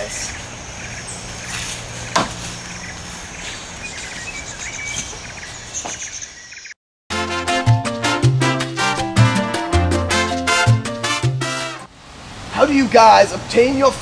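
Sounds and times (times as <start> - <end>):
bird chirps: 0.0 - 6.8
salsa music with strong beat: 7.1 - 11.9.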